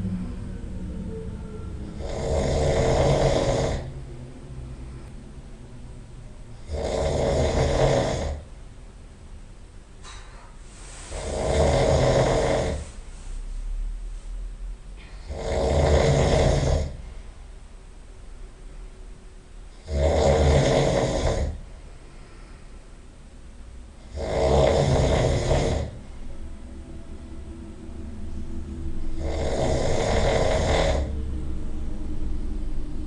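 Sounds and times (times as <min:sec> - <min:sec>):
person snoring loudly: 0:01.8 - 0:04.0, 0:06.6 - 0:08.5, 0:11.1 - 0:13.0, 0:15.1 - 0:17.0, 0:19.7 - 0:21.7, 0:24.0 - 0:26.1, 0:29.1 - 0:31.2
faint breath: 0:10.0 - 0:15.4, 0:21.4 - 0:23.1.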